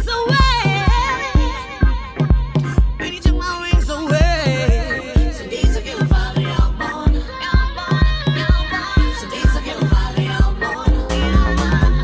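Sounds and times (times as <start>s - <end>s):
background music with steady beat: 0.0s - 12.0s
person singing: 0.0s - 12.0s.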